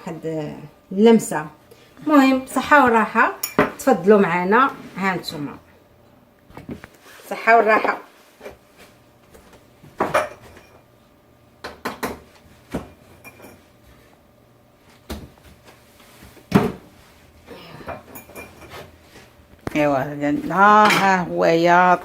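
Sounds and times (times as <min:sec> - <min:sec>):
dishes and cutlery clinking: 0:10.0 - 0:10.8, 0:13.2 - 0:13.7, 0:17.8 - 0:18.9.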